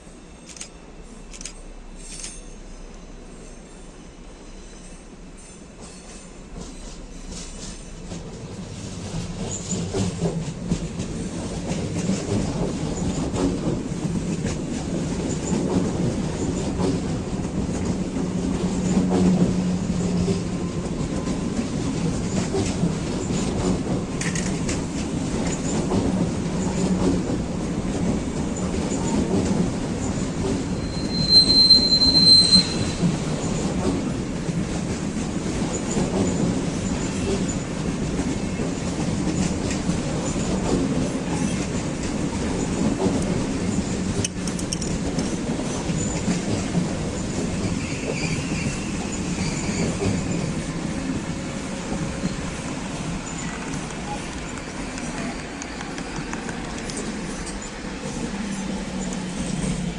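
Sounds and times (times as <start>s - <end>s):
high-pitched train squeal: 0.0s - 10.5s, 28.4s - 34.2s, 35.5s - 59.9s
train rumbling: 0.0s - 59.9s.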